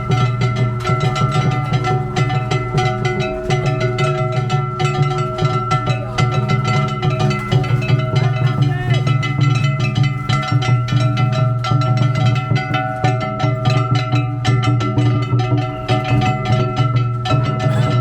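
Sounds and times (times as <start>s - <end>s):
drums in a quick rhythm: 0.0s - 18.0s
plucked string instrument: 0.0s - 18.0s
held high note: 15.5s - 18.0s.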